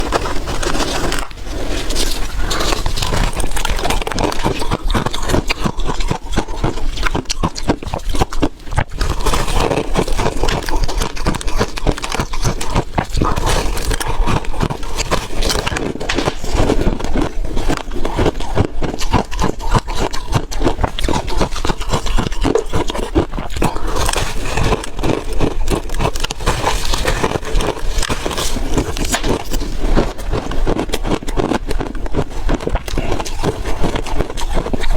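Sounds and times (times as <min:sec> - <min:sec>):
ice crunching: 0:00.0 - 0:06.9, 0:22.8 - 0:31.6.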